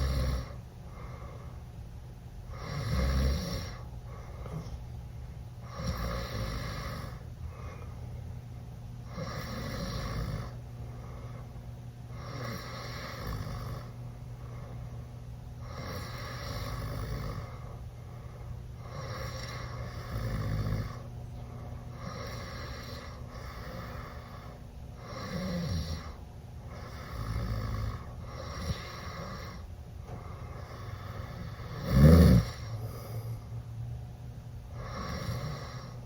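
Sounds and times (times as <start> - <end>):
boy snoring raspily: 0.0 - 0.6, 2.5 - 4.7, 5.6 - 7.3, 9.1 - 10.6, 12.1 - 14.0, 15.6 - 17.6, 18.8 - 21.0, 21.9 - 29.7, 30.4 - 33.4, 34.8 - 36.0.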